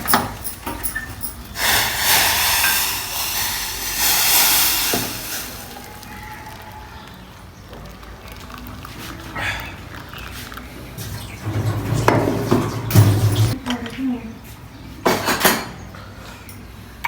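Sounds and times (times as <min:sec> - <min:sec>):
tea pouring into cups: 0:01.2 - 0:13.6.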